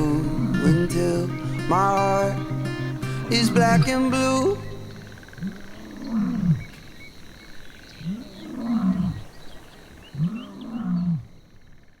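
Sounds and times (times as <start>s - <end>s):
lion roaring: 5.0s - 6.8s, 8.0s - 9.4s, 10.1s - 11.3s.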